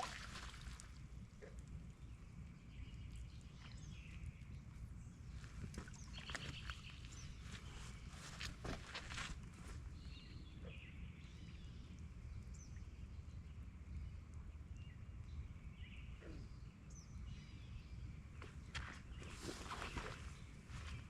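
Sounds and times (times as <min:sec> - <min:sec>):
bird calls: 0:01.4 - 0:11.8, 0:18.4 - 0:21.0.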